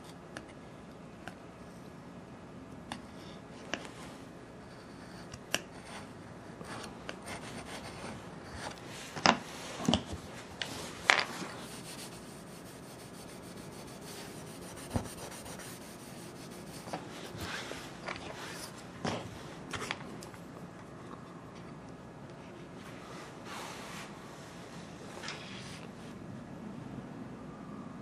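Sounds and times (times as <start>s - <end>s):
hand tool rubbing on wood floor: 10.7s - 18.8s.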